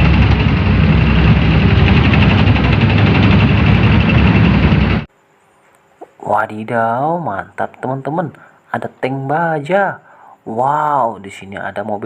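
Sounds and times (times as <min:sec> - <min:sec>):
tank engine rumbling: 0:00.0 - 0:05.1.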